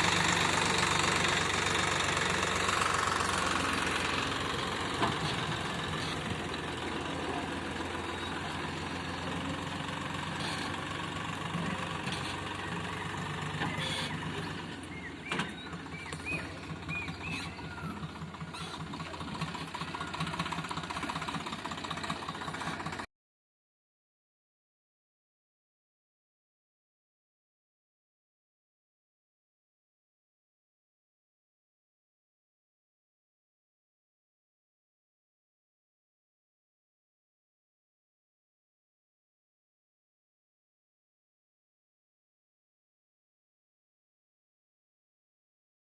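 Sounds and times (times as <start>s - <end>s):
tractor diesel engine running: 0.0s - 23.1s.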